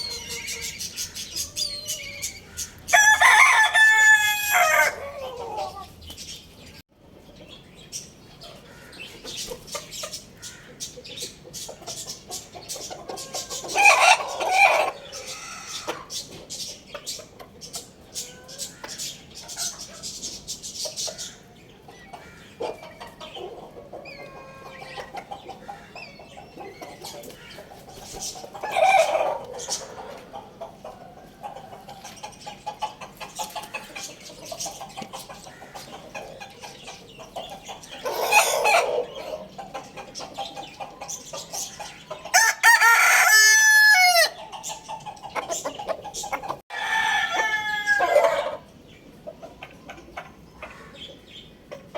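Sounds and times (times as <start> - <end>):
chickens clucking: 0.0 - 51.9
rooster crowing: 2.9 - 5.9, 42.3 - 44.4, 46.7 - 48.6.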